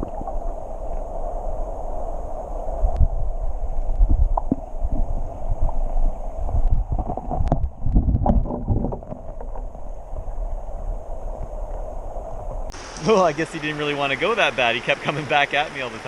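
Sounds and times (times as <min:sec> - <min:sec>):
wind rumbling on microphone: 0:00.0 - 0:13.0
stream rushing: 0:12.2 - 0:16.0.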